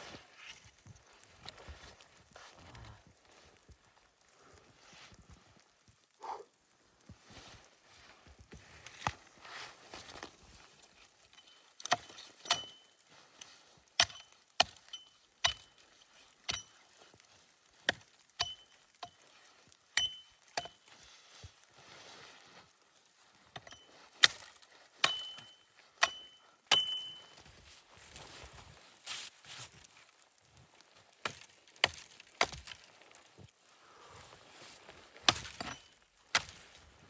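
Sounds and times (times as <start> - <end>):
sharp knocks with metallic ring: 25.0 - 27.2.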